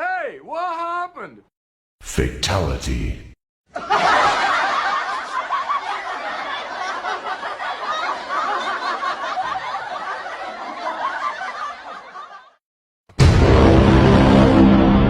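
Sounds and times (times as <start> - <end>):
crowd laughing: 3.7 - 12.6.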